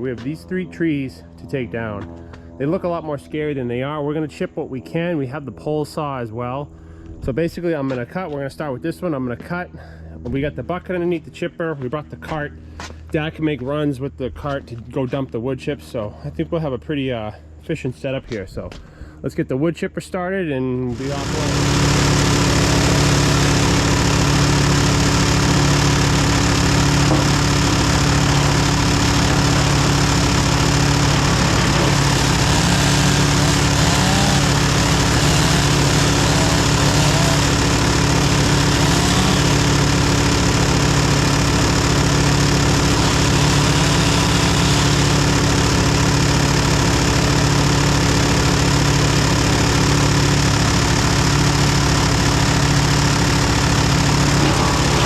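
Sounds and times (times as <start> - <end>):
wood chipper engine running: 0.0 - 3.8, 9.2 - 13.7, 20.6 - 55.0.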